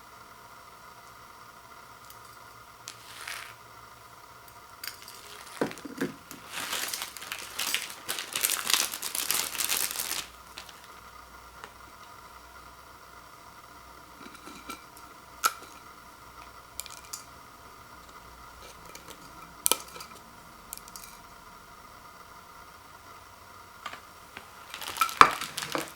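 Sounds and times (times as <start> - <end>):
plastic wrapper crinkling: 2.9 - 3.6, 4.8 - 11.7, 18.1 - 20.2, 23.8 - 25.9.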